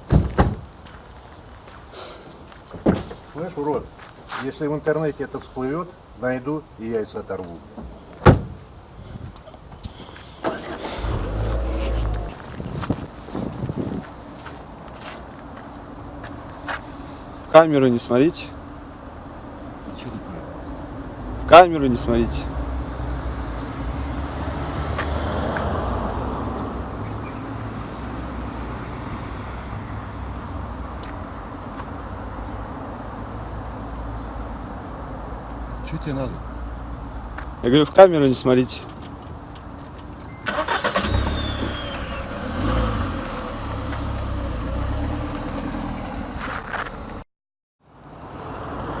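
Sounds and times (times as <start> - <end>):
road traffic rumble: 0.0 - 49.0
car driving past: 10.4 - 12.5, 22.7 - 29.8, 40.5 - 47.1
falling whines: 40.4 - 42.4.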